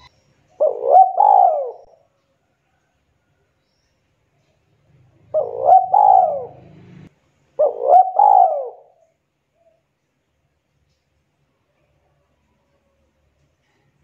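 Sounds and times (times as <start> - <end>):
dove cooing: 0.6 - 2.0, 5.2 - 9.0.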